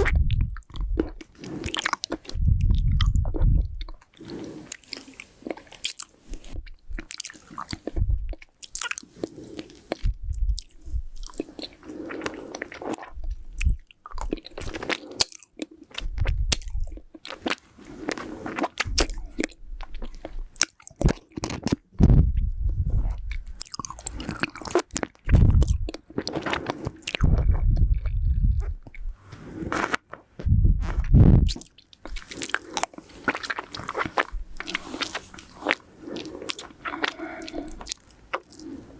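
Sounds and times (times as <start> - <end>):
lollipop being sucked and bitten: 16.0 - 19.5, 20.6 - 35.8.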